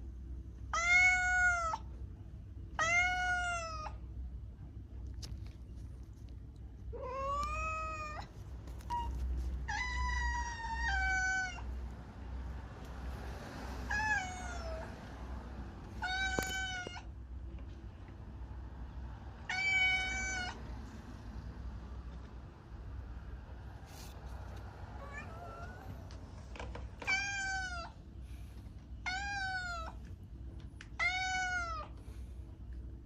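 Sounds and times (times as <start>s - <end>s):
cat meowing: 0.7s - 1.9s, 2.7s - 4.0s, 6.9s - 11.8s, 13.9s - 14.9s, 16.0s - 17.1s, 19.4s - 20.7s, 25.0s - 26.0s, 27.0s - 28.0s, 29.0s - 30.0s, 30.9s - 32.0s.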